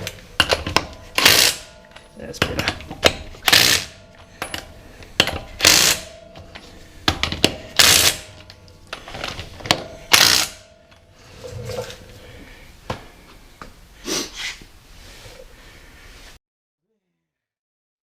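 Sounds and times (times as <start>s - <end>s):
hand ratchet clicking: 0.4s - 1.7s, 3.0s - 6.1s, 7.2s - 8.3s, 9.7s - 10.7s
metallic rasping burst: 1.0s - 1.9s, 3.3s - 5.0s, 5.6s - 7.0s, 7.6s - 8.5s, 10.0s - 10.8s.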